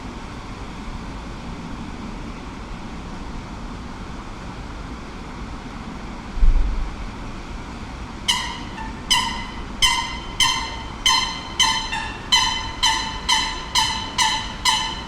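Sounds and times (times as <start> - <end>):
city background hum: 0.0 - 15.0
metal bell ringing: 8.3 - 15.0.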